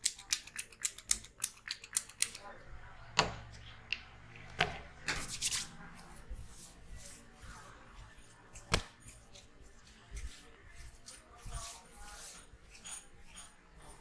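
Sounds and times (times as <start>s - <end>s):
soft rubbing: 5.2s - 14.0s
hands slapping a head: 8.6s - 9.0s.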